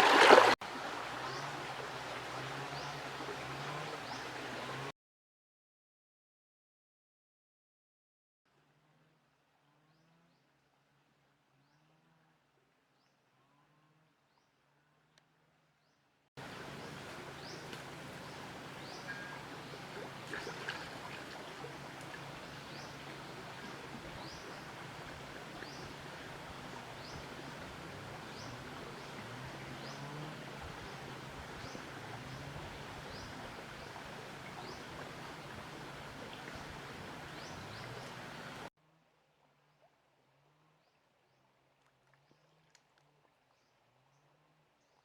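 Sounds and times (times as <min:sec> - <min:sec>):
flowing river: 0:00.0 - 0:04.9, 0:16.4 - 0:44.8.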